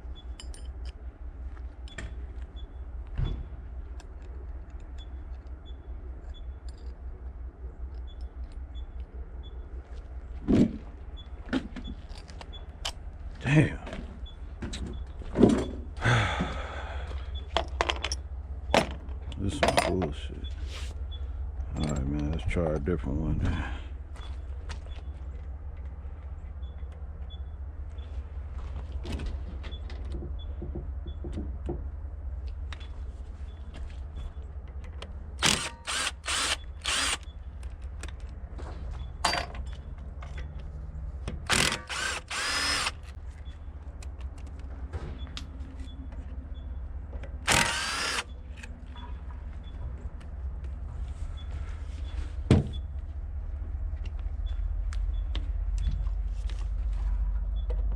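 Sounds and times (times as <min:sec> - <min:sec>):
steady low hum: 0:00.0 - 0:57.9
power drill motor bursts: 0:35.4 - 0:37.3, 0:41.5 - 0:43.1, 0:47.5 - 0:48.3.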